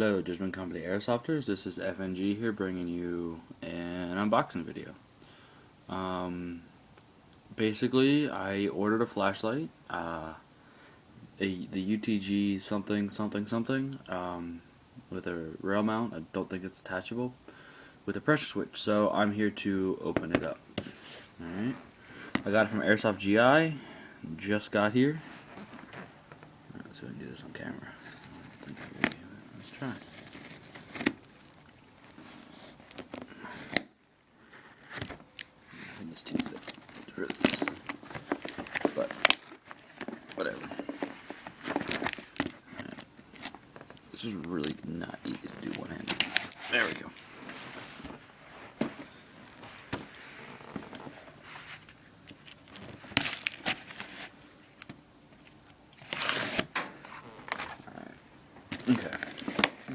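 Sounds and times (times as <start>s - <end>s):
package rustling: 27.9s - 33.9s, 34.5s - 48.2s, 49.9s - 58.0s, 58.6s - 59.9s.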